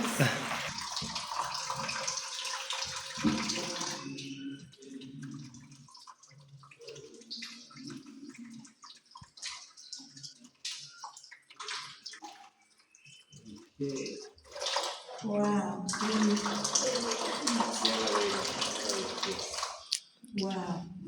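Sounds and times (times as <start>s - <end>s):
water running over hands: 0.0s - 20.7s
water drips and splashes: 0.0s - 20.8s
faint low voices: 15.2s - 19.7s.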